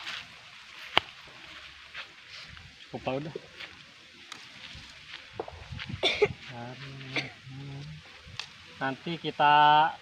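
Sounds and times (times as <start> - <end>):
man coughing: 6.0 - 6.4, 7.1 - 7.4.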